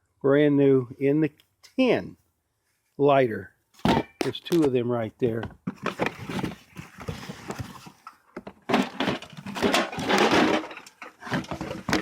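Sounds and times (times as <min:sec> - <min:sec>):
objects rattling: 0:05.6 - 0:12.0
objects scraping and rustling: 0:05.6 - 0:12.0.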